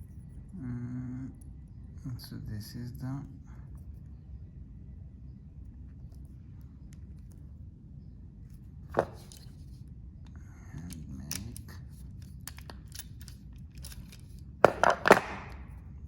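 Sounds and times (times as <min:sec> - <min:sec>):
light clicks and handling noises: 0:05.6 - 0:07.7, 0:08.4 - 0:15.8.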